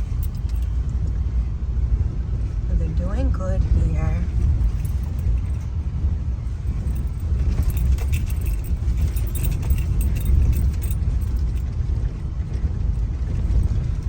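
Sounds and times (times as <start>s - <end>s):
light jingling rattle: 0.0s - 1.1s, 4.4s - 5.8s, 6.5s - 14.0s
tyre and engine rumble: 0.0s - 14.0s.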